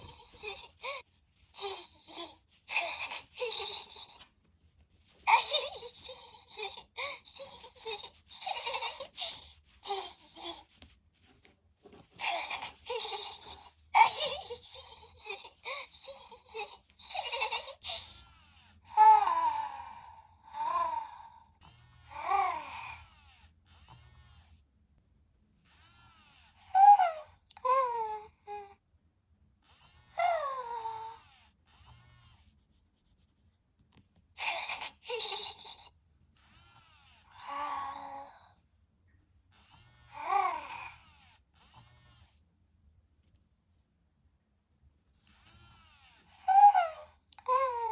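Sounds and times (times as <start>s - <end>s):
toy giggles and babbling coos: 0.0s - 4.3s, 5.2s - 10.8s, 12.1s - 21.2s, 22.1s - 23.0s, 26.6s - 28.8s, 30.2s - 31.3s, 34.4s - 36.0s, 40.2s - 41.1s, 46.4s - 47.9s.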